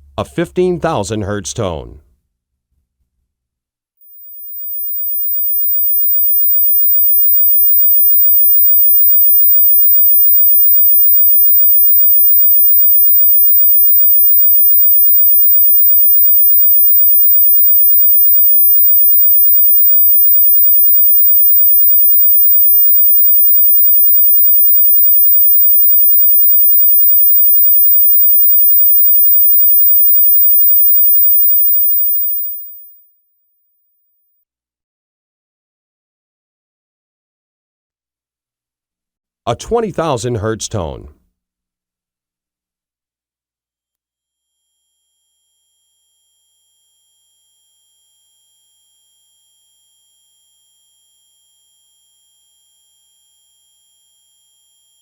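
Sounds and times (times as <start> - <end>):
high-pitched sine test tone: 4.0 - 33.2.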